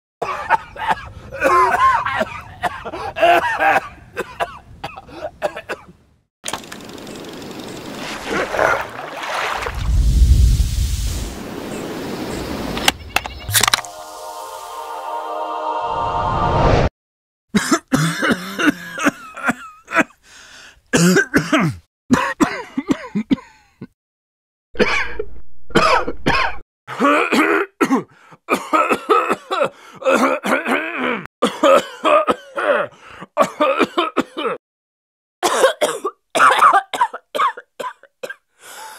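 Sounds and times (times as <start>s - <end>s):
elderly man coughing: 0.2s - 5.9s, 17.5s - 20.2s, 21.0s - 23.9s, 25.8s - 34.6s, 35.4s - 38.4s
man coughing: 0.2s - 5.9s, 17.5s - 20.2s, 21.0s - 23.9s, 24.8s - 34.6s, 35.4s - 38.4s
man gasping for breath: 2.9s - 3.2s, 20.2s - 20.9s, 28.1s - 28.5s, 29.7s - 30.0s, 32.8s - 33.4s, 38.5s - 38.9s.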